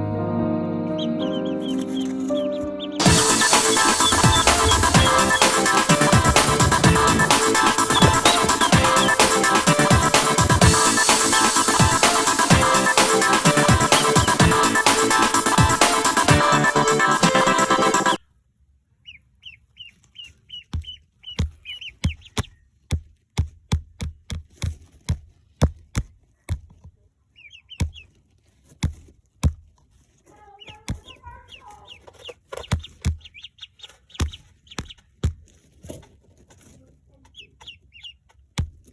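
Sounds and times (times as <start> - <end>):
background music: 0.0 - 18.2
chicks peeping: 0.9 - 16.3, 19.0 - 22.5, 27.3 - 28.2, 30.3 - 35.2, 37.1 - 38.4
hens clucking: 1.0 - 16.8, 30.4 - 35.0.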